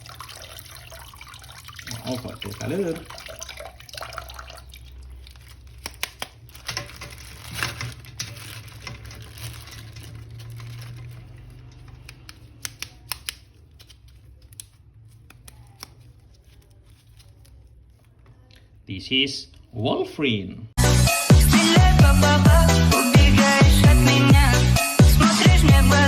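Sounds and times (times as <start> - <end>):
objects being handled: 4.9 - 18.8.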